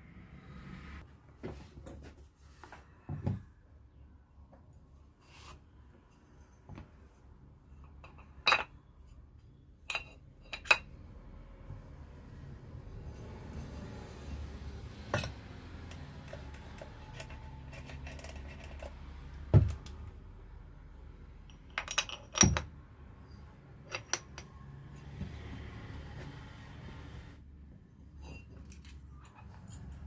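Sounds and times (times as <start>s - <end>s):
metal tools clinking: 21.5s - 22.7s, 23.9s - 24.6s, 28.2s - 30.0s.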